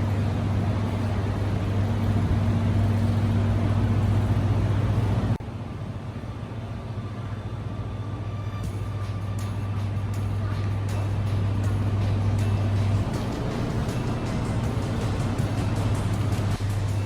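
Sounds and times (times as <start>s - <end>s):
broad rushing noise: 0.0s - 5.4s, 9.6s - 17.0s
steady low hum: 0.0s - 17.0s.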